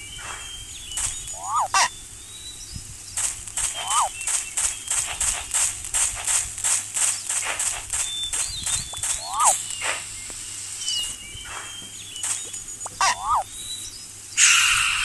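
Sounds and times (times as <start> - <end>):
zigzag chirps: 0.9 - 1.9, 3.2 - 13.6
clicks: 3.2 - 10.4
gliding whistles: 3.7 - 4.1, 8.0 - 11.9.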